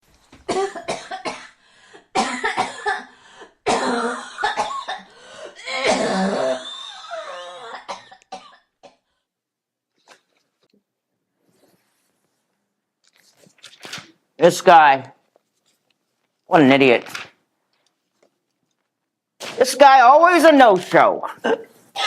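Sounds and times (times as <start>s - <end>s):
person coughing: 0.5s - 9.0s.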